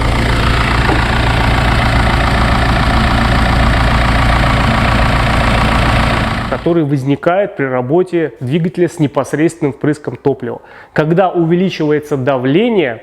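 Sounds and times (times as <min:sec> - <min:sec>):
petrol engine idling with ticking: 0:00.0 - 0:06.7.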